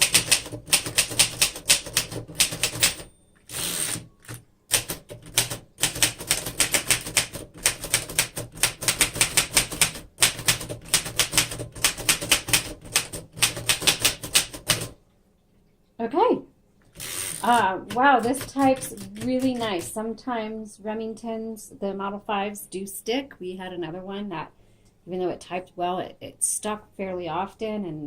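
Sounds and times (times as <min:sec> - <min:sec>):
typewriter carriage return sweep: 0:00.0 - 0:14.9, 0:17.0 - 0:20.0
typewriter keystrokes: 0:00.0 - 0:15.0, 0:17.0 - 0:20.0.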